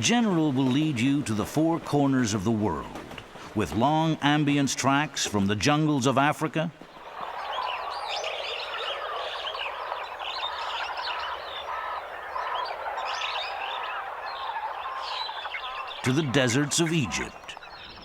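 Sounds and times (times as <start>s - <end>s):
chorus of birds chirping: 6.8s - 18.0s.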